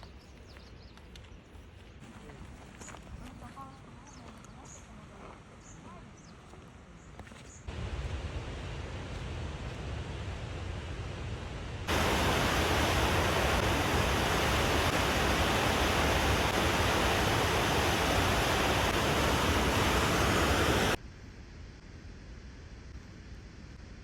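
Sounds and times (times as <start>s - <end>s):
waterfall roaring: 11.9s - 21.0s.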